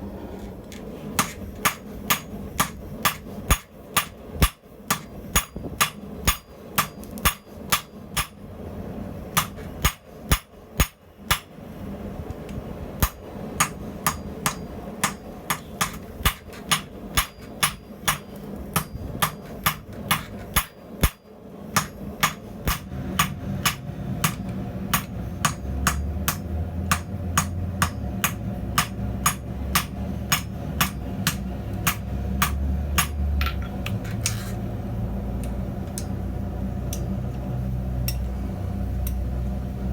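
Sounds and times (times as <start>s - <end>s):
low steady hum: 0.0s - 39.9s
hammer striking steel on anvil: 1.2s - 8.4s, 9.3s - 11.6s, 13.0s - 34.6s.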